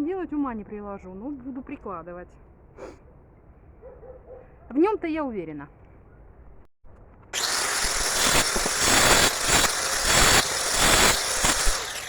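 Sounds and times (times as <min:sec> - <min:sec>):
angle grinder cutting brick: 0:07.4 - 0:12.0.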